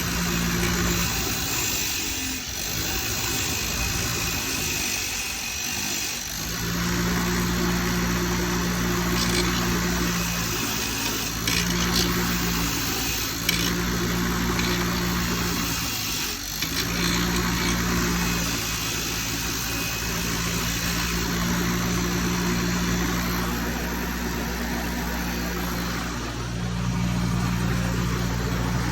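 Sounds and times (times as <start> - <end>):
motor hum with pitched tone: 0.0 - 28.9
wire bristles scratching bolt: 9.0 - 19.0.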